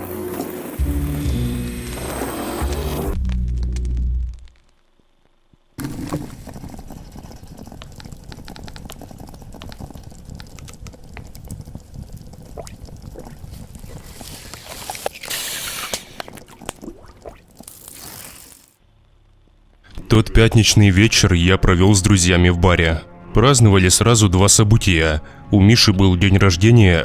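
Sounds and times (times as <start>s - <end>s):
water dripping and trickling: 10.3s - 18.3s.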